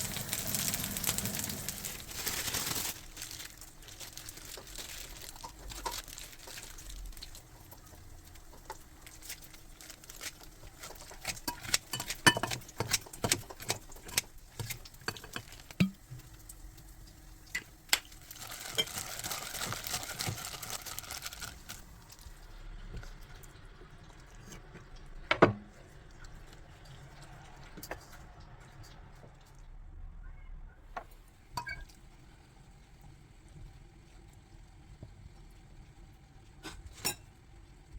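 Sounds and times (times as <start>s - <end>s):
utensils clicking against dishes: 10.2s - 16.0s.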